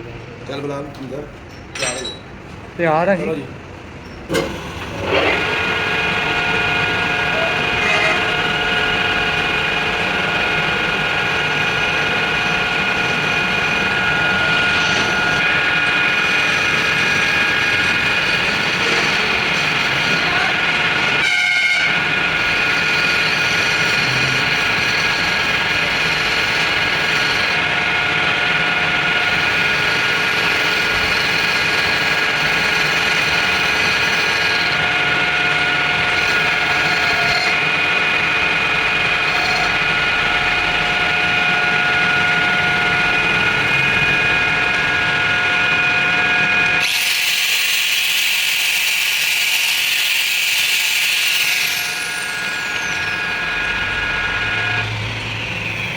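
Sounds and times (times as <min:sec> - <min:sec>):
power tool motor whine: 0:04.3 - 0:55.9.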